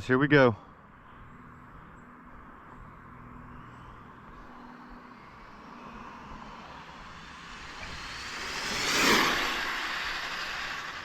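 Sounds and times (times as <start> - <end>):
electric motor whining: 5.5 - 11.0.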